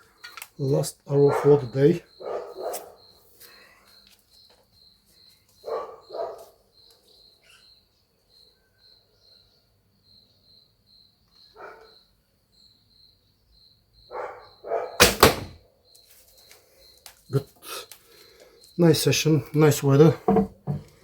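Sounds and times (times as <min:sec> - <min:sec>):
insect chirping: 0:00.0 - 0:21.0
dogs barking: 0:01.2 - 0:03.0, 0:05.6 - 0:06.5, 0:11.6 - 0:12.0, 0:14.1 - 0:15.0.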